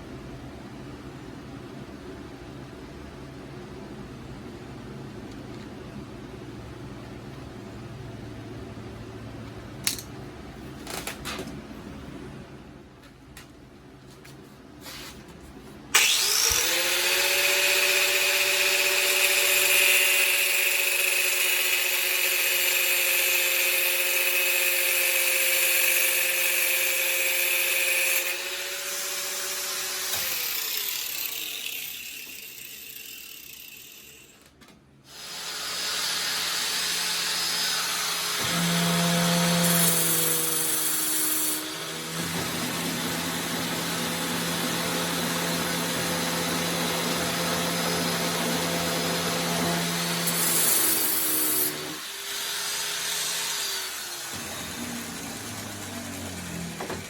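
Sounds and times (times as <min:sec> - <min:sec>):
power tool cutting metal tube: 0:16.0 - 0:34.4, 0:35.1 - 0:57.0.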